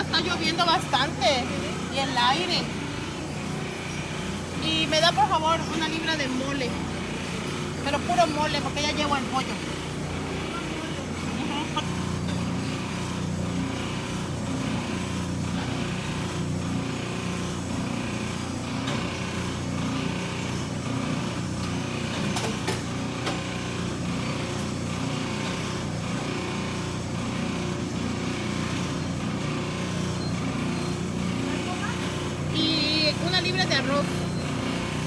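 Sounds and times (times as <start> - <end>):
machine humming with pulse: 0.0 - 35.0.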